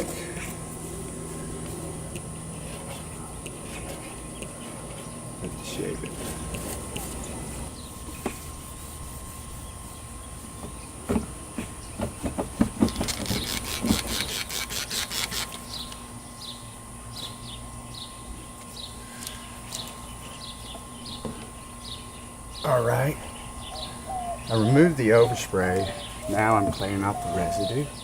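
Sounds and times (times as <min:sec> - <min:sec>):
birds chirping: 0:00.0 - 0:08.3, 0:15.6 - 0:28.0.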